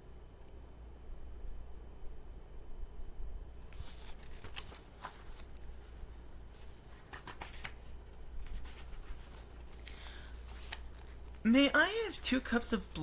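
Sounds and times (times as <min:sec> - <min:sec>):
book pages turning: 0:03.6 - 0:13.0.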